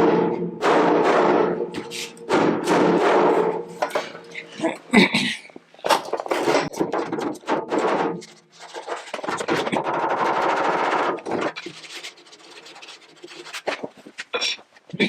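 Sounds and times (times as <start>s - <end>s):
rubbing across metal: 1.7s - 4.4s, 6.1s - 14.3s.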